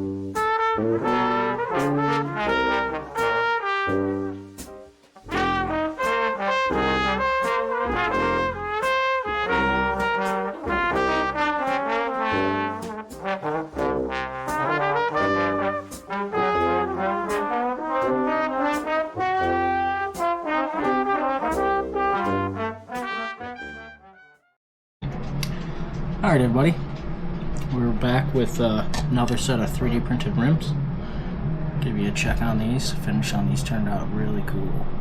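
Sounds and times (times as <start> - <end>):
brass music over steady beat: 0.0 - 24.6.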